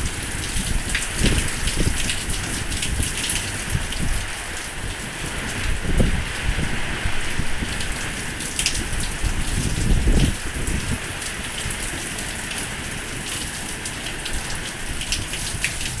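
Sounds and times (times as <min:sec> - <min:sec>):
low gusting rumble: 0:00.0 - 0:11.0
heavy rain pouring: 0:00.0 - 0:16.0.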